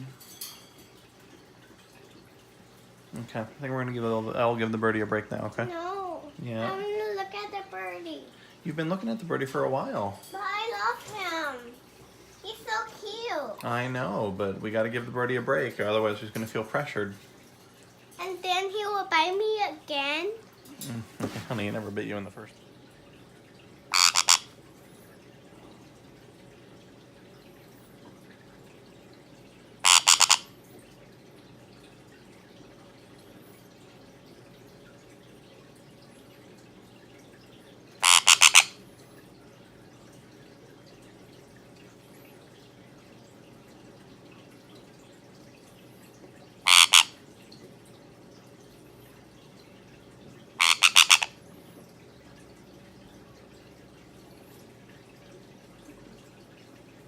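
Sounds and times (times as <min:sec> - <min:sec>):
parrot shrill squawks: 0:23.9 - 0:24.5, 0:29.8 - 0:30.5, 0:38.0 - 0:38.8, 0:46.6 - 0:47.2, 0:50.6 - 0:51.4.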